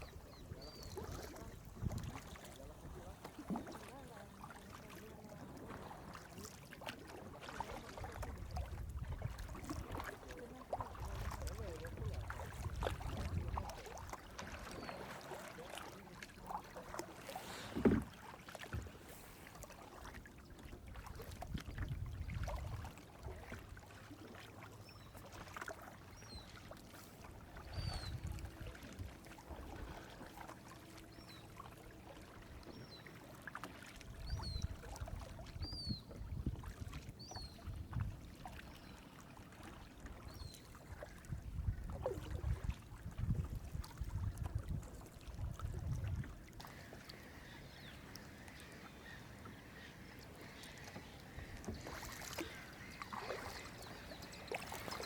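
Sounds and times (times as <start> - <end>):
water splashing around a kayak: 0.0 - 55.0
water dripping off paddle: 45.2 - 55.0.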